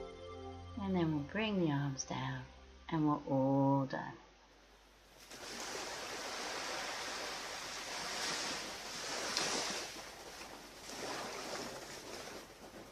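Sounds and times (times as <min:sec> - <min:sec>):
ocean surf washing onto beach: 0:05.2 - 0:12.9.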